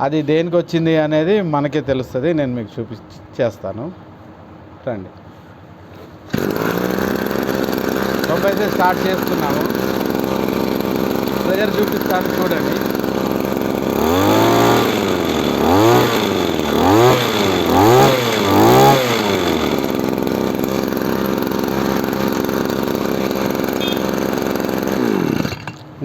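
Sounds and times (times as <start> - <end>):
small engine revving: 6.3 - 26.0.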